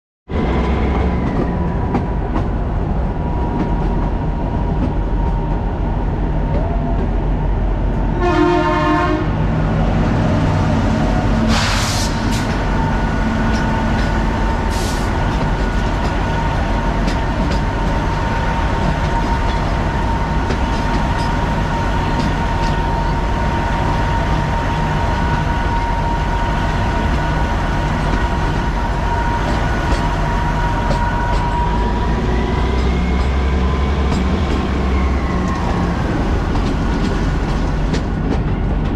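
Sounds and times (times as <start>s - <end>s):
train wheels rumbling: 0.3s - 38.9s
train horn: 8.2s - 9.4s.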